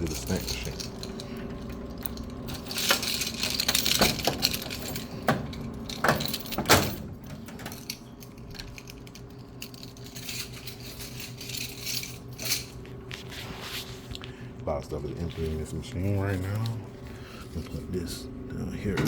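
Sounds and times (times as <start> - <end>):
steady machine hum: 0.0 - 19.0
vending machine lock and door clicks: 2.1 - 8.8.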